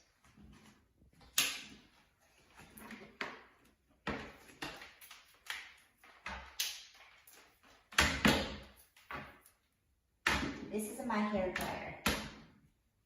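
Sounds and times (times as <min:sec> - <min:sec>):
objects knocking and clattering: 0:00.2 - 0:09.5.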